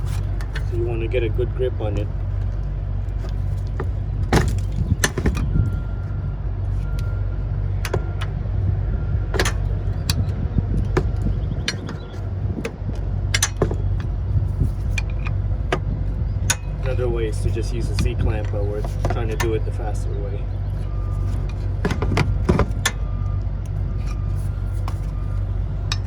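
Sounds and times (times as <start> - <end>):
steady low hum: 0.0 - 26.0
screwdriver scraping metal: 9.4 - 12.8.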